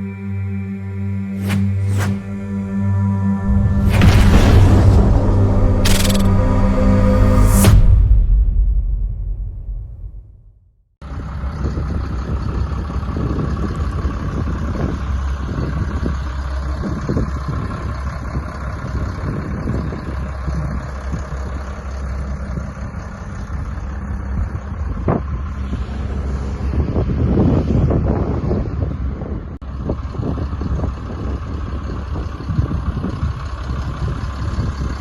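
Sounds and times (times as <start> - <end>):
diesel engine running: 0.0 - 10.3, 11.0 - 35.0
music: 0.0 - 10.4
sharp click: 5.7 - 7.8.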